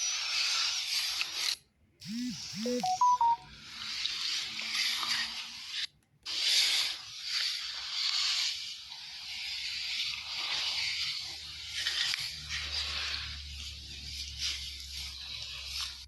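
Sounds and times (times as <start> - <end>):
short rising electronic chime: 2.0 - 3.4.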